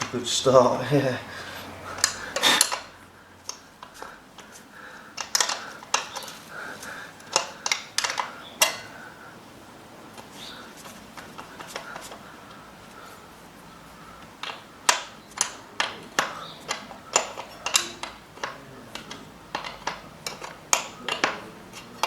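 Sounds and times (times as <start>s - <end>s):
metal tools clinking: 0.0s - 4.5s, 5.2s - 9.0s, 14.4s - 22.0s.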